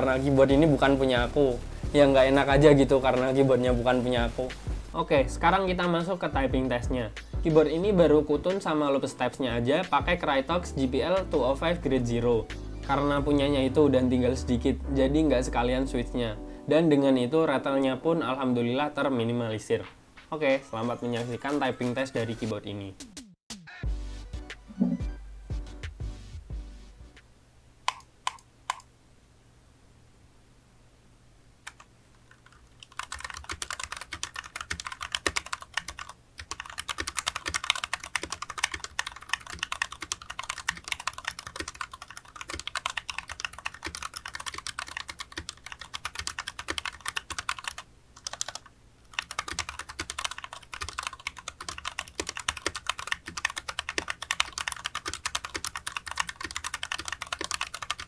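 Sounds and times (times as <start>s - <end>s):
mechanical keyboard typing: 31.7s - 58.0s.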